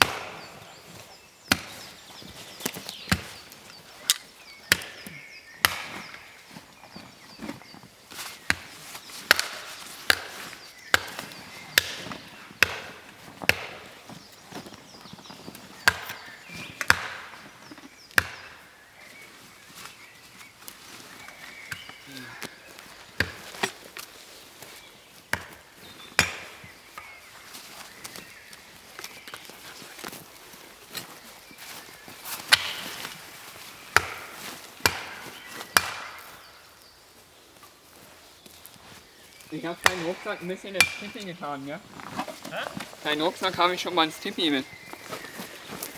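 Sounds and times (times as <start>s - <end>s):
axe chopping wood: 0.0s - 0.6s, 1.5s - 2.0s, 2.6s - 6.3s, 8.4s - 14.0s, 15.8s - 17.5s, 18.1s - 18.6s, 23.1s - 24.1s, 25.3s - 27.1s, 32.4s - 33.1s, 33.9s - 36.6s, 39.8s - 41.4s.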